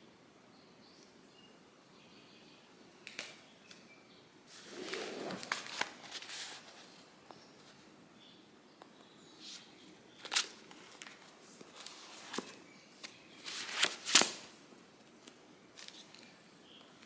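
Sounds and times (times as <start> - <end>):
paper rustling: 4.5 - 7.0, 10.2 - 16.3.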